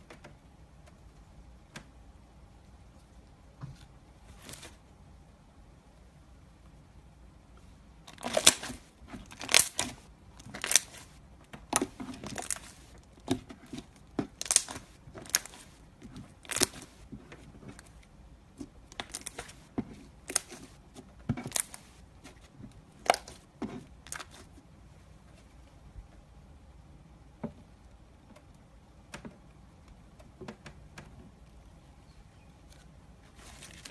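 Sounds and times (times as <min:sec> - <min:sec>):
slime squeezed crackling popping: 0:08.1 - 0:11.1, 0:11.7 - 0:17.0, 0:18.6 - 0:19.6.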